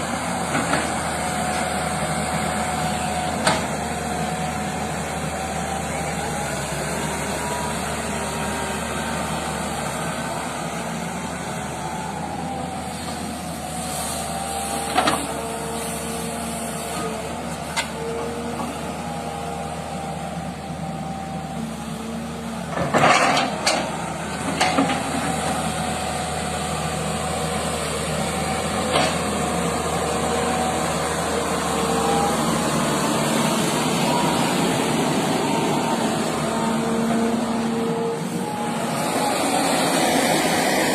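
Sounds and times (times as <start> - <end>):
excavator engine running: 0.0 - 40.9
hydraulic whine: 22.3 - 40.9.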